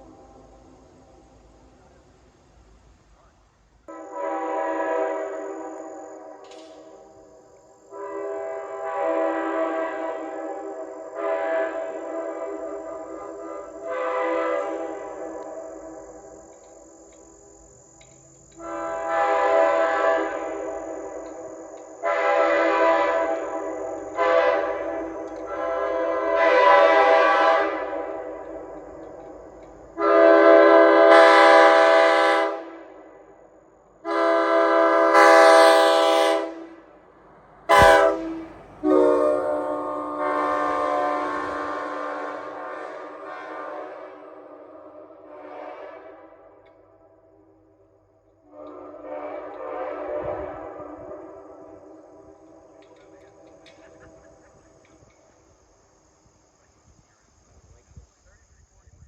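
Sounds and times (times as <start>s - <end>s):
locomotive air horn blasts: 3.9s - 16.5s, 18.6s - 33.0s, 34.0s - 36.9s, 37.7s - 47.2s, 48.4s - 54.6s.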